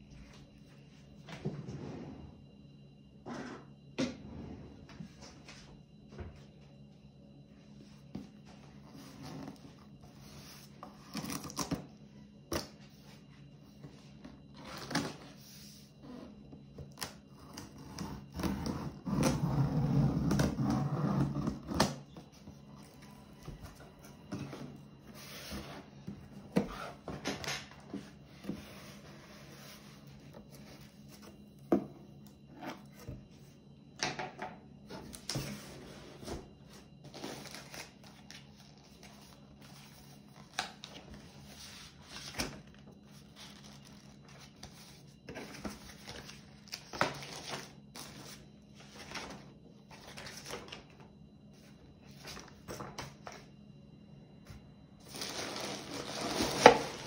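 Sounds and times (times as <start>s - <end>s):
faint low hum: 0.0s - 57.0s
packaging rustling and tearing: 55.1s - 57.0s.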